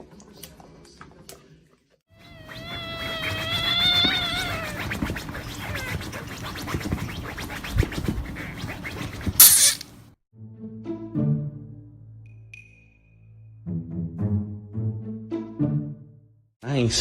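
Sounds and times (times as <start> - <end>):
animal long high cry: 2.2 - 6.4.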